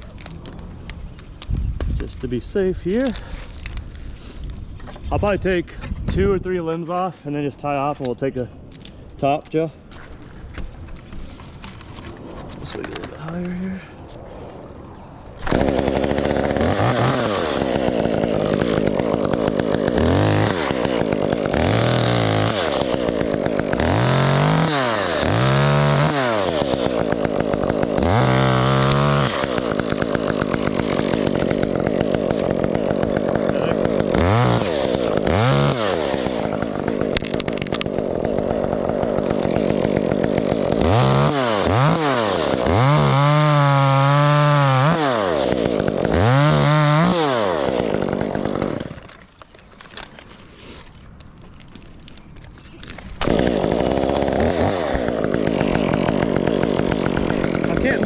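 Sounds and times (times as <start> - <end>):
chainsaw cutting and revving: 15.4 - 49.3, 52.8 - 58.0.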